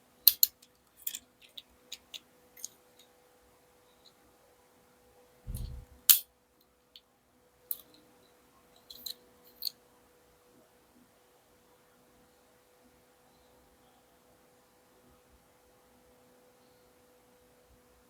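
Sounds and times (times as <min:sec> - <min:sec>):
faint steady hum: 0:05.5 - 0:06.0
light taps: 0:05.5 - 0:06.0
thump of handling toy car: 0:05.5 - 0:06.0.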